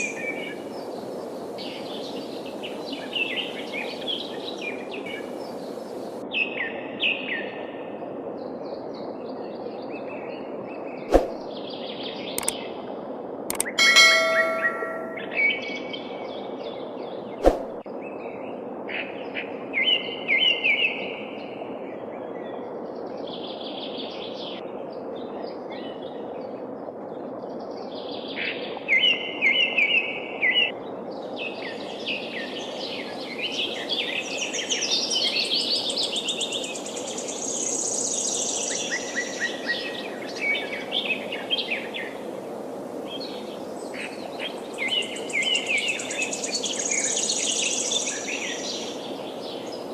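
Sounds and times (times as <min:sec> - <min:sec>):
river flowing: 0:00.0 - 0:06.3, 0:13.5 - 0:15.8
sharp click: 0:13.5 - 0:13.8.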